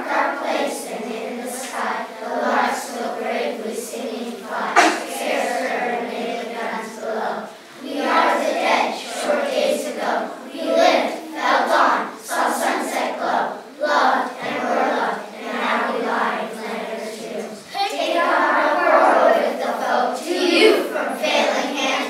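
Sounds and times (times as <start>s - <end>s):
children's choir singing: 0.0s - 22.0s.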